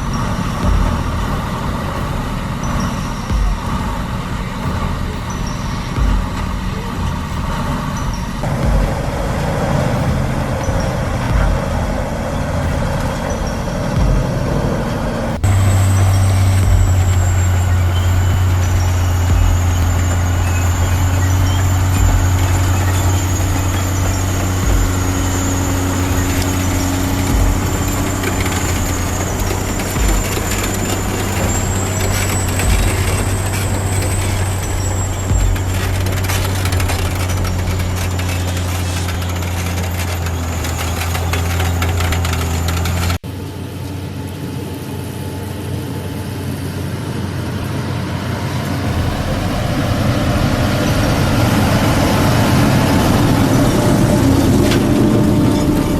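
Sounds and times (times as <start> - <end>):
repeated knocks: 0.0 - 43.2
thin high whine: 0.0 - 43.2, 48.8 - 55.9
diesel engine running: 0.0 - 55.9.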